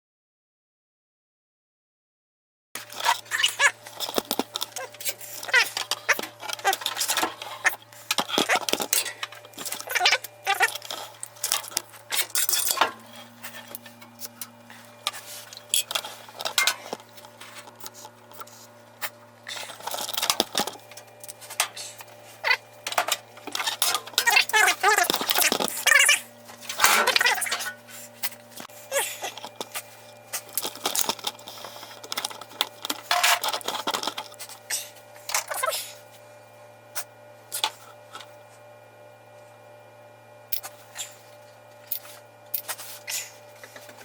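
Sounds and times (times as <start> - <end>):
steady low hum: 2.8 - 44.0
metal tools clinking: 10.6 - 12.9.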